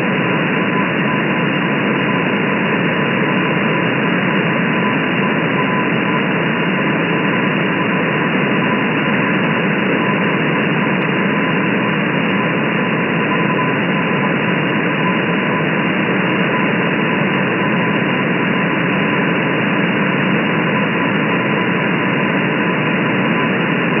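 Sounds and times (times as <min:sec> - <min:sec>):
faint steady radio tone: 0:00.0 - 0:24.0.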